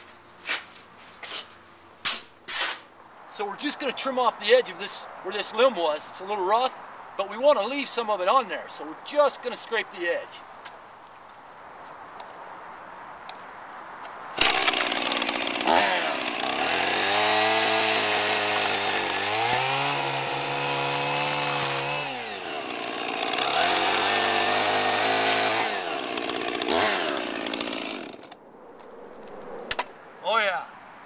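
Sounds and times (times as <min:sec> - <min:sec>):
chainsaw cutting log: 0:14.4 - 0:28.4.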